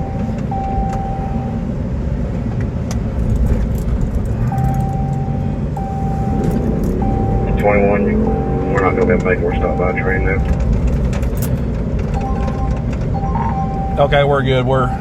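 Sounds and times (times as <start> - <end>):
electronic beep tone: 0.0 - 1.7, 4.5 - 10.6, 12.2 - 15.0
car engine and road rumble: 0.0 - 15.0.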